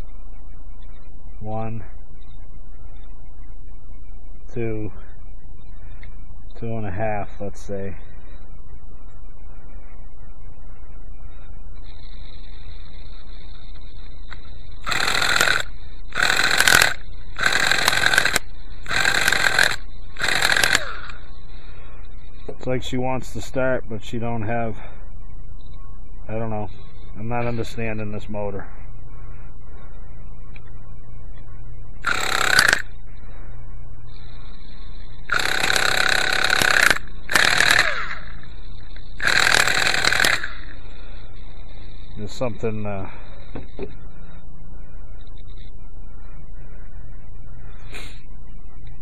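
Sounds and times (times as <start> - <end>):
thin high whine: 0.0 - 49.0
electric starter spinning engine: 11.9 - 22.5, 32.0 - 33.0, 34.1 - 43.8.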